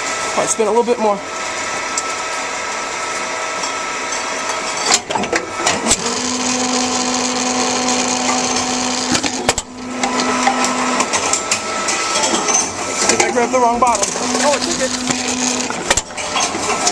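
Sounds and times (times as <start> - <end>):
steady hum: 0.0 - 16.9
machine motor whirring: 5.3 - 16.9.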